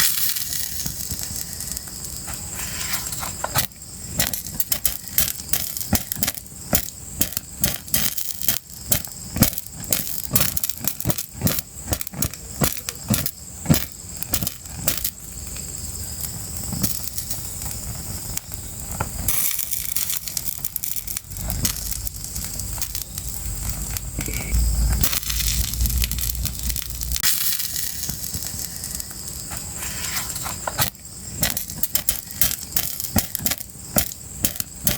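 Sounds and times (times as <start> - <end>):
fire crackling and popping: 0.0 - 34.9
low rumble: 21.2 - 27.4.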